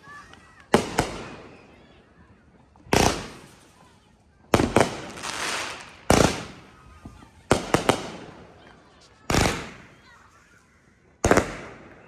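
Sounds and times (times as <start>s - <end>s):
fireworks banging: 0.0s - 1.9s, 2.9s - 3.9s, 4.5s - 10.5s, 11.2s - 12.0s.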